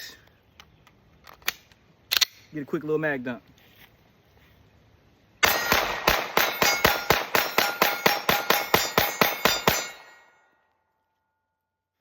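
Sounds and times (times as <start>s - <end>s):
rapid pistol shots: 5.4s - 10.2s.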